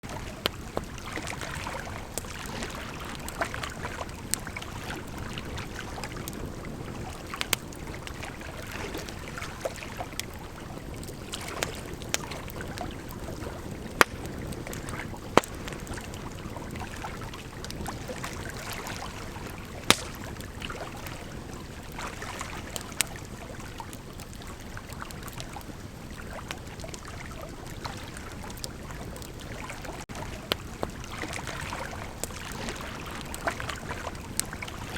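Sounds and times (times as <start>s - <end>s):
bonfire crackling: 0.1s - 34.9s
fire pops and snaps: 7.4s - 8.2s, 11.0s - 16.2s, 19.7s - 20.6s, 30.4s - 34.8s.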